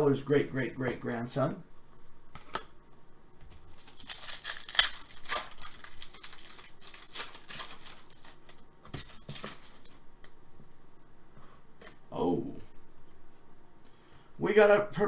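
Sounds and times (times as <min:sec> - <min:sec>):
foil wrapper crinkling and tearing: 0:03.5 - 0:10.0.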